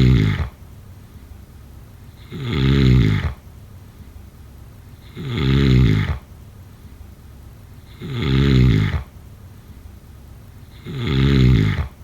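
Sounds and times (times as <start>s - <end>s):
long pitched snores: 0.0s - 0.6s, 2.2s - 3.4s, 5.0s - 6.3s, 7.9s - 9.1s, 10.7s - 12.0s.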